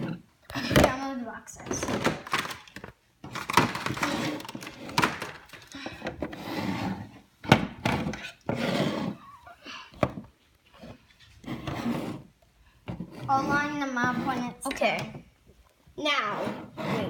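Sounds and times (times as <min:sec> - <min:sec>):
boxes and plastic helmets knocking: 0:00.5 - 0:06.4, 0:07.4 - 0:08.6, 0:09.9 - 0:10.4.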